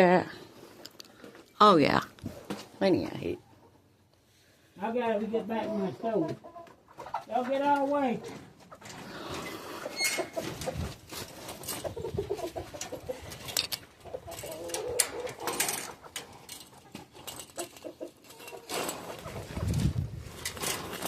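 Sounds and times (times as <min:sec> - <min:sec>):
chickens clucking softly: 0:05.6 - 0:07.6, 0:11.7 - 0:19.8
birds scratching and clicking: 0:08.3 - 0:21.0.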